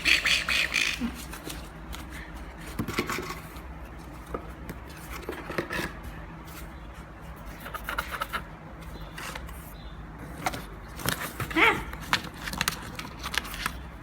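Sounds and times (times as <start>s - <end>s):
steady low hum: 0.0s - 2.7s.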